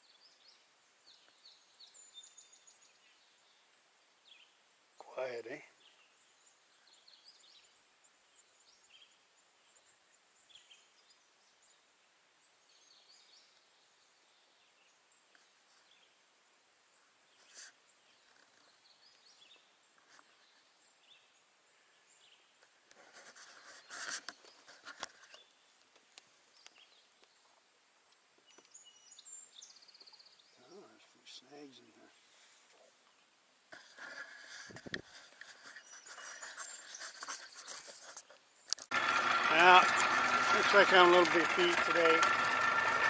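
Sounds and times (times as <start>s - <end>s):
faint bird chirps: 0.0s - 16.2s, 26.5s - 33.4s, 34.2s - 38.8s
clicks and rustling: 22.6s - 26.8s.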